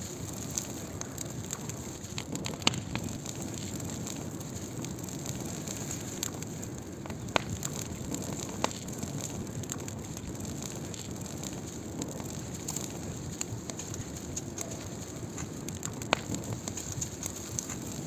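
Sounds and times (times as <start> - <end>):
sharp fire pops: 0.0 - 18.0
wood fire crackling: 0.0 - 18.0.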